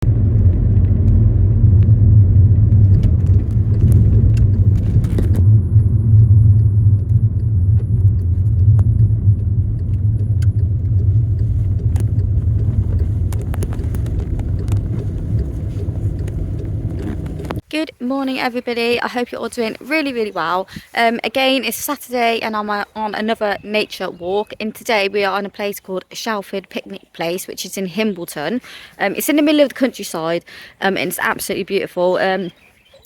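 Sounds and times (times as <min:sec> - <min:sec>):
loud low rumble: 0:00.0 - 0:17.6.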